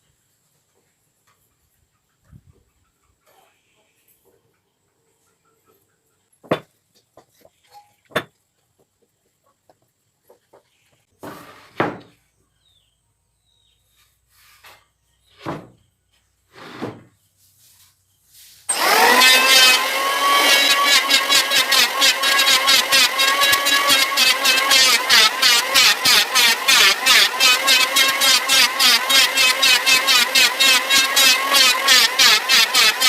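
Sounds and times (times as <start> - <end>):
power tool motor running: 18.7 - 33.0.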